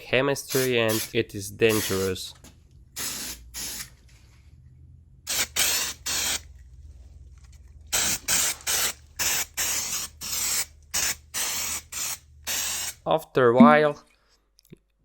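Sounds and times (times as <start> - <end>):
spray can hissing bursts: 0.5 - 2.0, 3.0 - 3.9, 5.3 - 6.4, 7.9 - 13.0.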